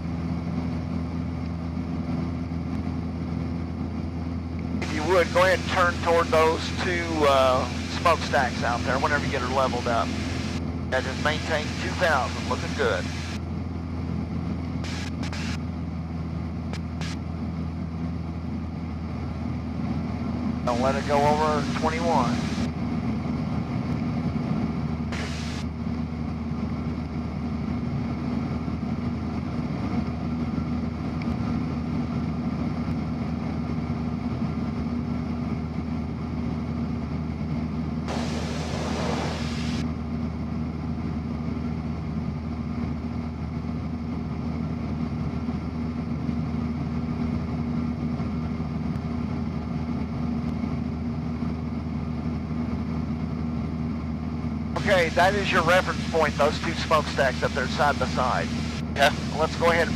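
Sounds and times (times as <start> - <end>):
airplane engine droning: 0.0 - 59.9
short hiss: 38.1 - 39.8.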